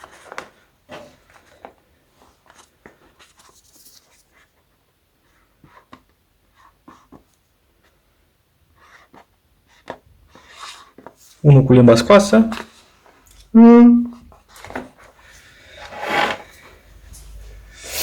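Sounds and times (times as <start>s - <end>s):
marker pen drawing on balloon: 15.8s - 16.4s.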